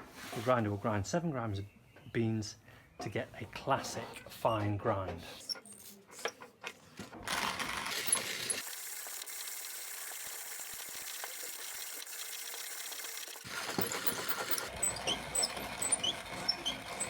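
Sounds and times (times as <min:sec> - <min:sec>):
manual coffee grinder grinding beans: 0:05.5 - 0:17.0.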